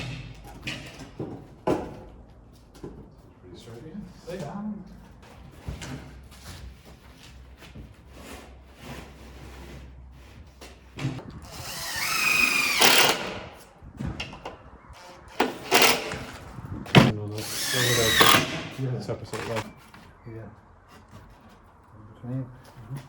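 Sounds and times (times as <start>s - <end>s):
cordless drill driving screws: 11.4s - 13.5s, 15.3s - 16.4s, 17.3s - 19.6s.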